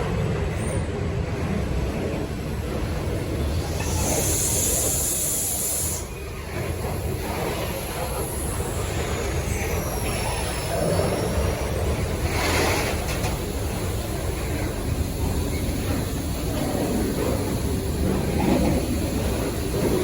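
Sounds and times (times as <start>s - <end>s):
freight train rumbling past: 0.0s - 20.0s
high hiss: 3.4s - 6.4s.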